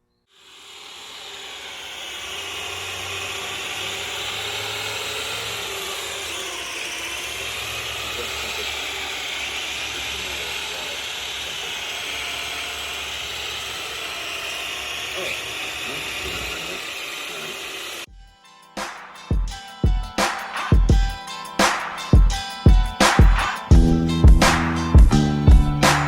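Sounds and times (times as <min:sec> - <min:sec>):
drone motors whirring: 0:00.3 - 0:18.1.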